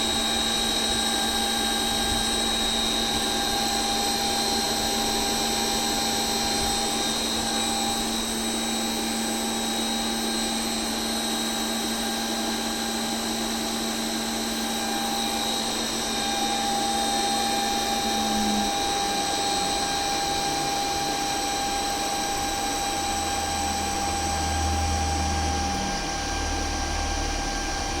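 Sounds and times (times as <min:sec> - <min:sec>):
high-pitched whine: 0:00.0 - 0:28.0
deeper hum: 0:16.0 - 0:21.4, 0:22.1 - 0:28.0
low tone: 0:16.2 - 0:21.2.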